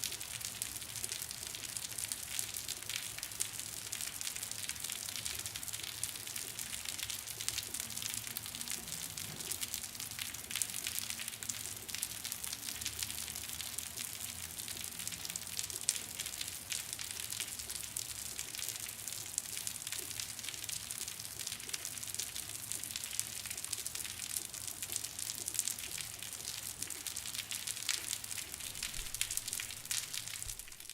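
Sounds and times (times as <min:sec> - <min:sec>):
rain on concrete: 0:00.0 - 0:30.9
water dripping: 0:19.3 - 0:30.9.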